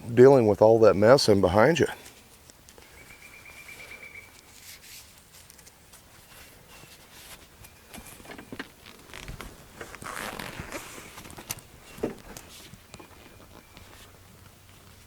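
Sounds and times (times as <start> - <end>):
strap webbing rasping: 8.8 - 14.1.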